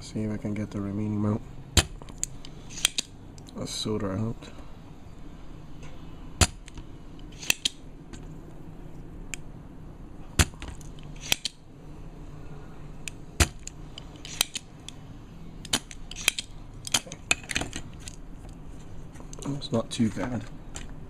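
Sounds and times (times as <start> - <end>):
desoldering pump snapping: 1.8 - 3.5, 6.4 - 8.2, 10.4 - 11.6, 13.0 - 15.0, 15.6 - 18.2.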